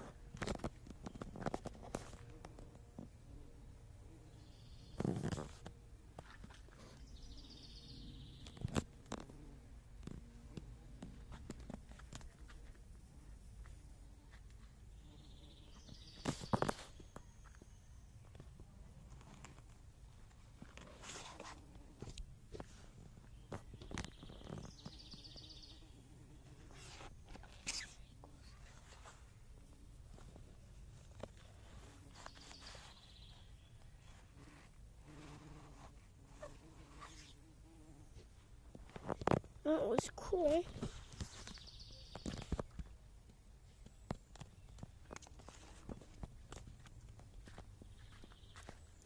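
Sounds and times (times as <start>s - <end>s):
faint clicks and rustles: 0.0s - 3.2s, 8.4s - 14.8s, 15.8s - 25.2s, 38.2s - 49.0s
bee buzzing: 34.3s - 38.2s.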